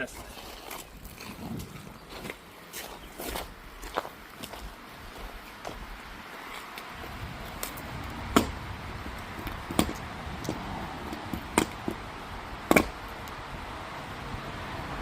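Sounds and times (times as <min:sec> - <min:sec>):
steady low rumble: 0:06.9 - 0:15.0.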